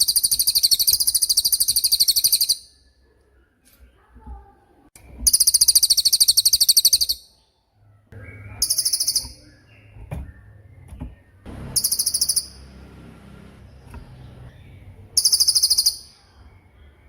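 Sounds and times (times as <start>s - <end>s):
songbird high-pitched trills: 0.0s - 2.8s, 5.2s - 7.4s, 8.2s - 10.8s, 11.6s - 12.7s, 15.2s - 16.8s.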